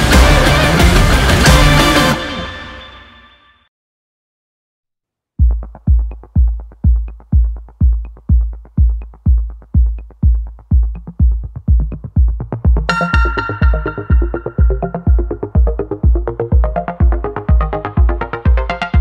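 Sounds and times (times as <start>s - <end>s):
kick drum beat: 5.4s - 19.0s
synthesizer chords: 5.6s - 19.0s.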